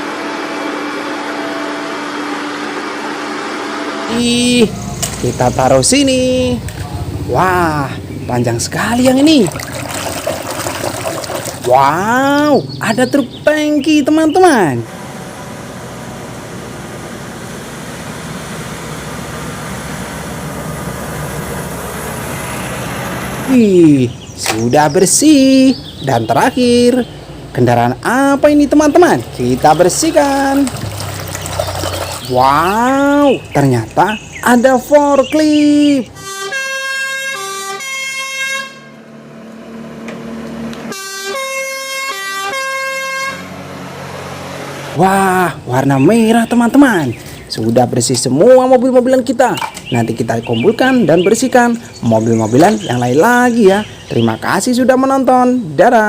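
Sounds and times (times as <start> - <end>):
water running over toy: 9.3 - 11.8, 29.0 - 32.4.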